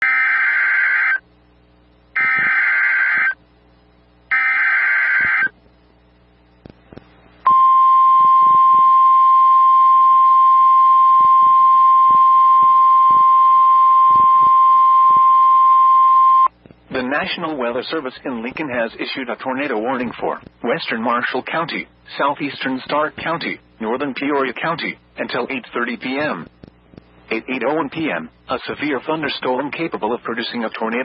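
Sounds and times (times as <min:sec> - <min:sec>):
harsh digital data tones: 0:02.2 - 0:03.4, 0:04.3 - 0:05.6, 0:07.5 - 0:16.5
steady single-pitch alert tone: 0:04.3 - 0:05.5, 0:07.5 - 0:16.5.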